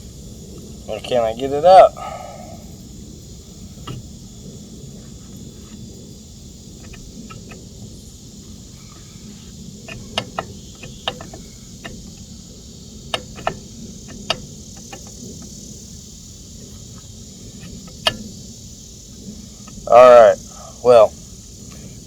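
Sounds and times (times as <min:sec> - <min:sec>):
crickets chirping: 0:00.0 - 0:22.0
tools and metal parts clicking: 0:09.9 - 0:12.2.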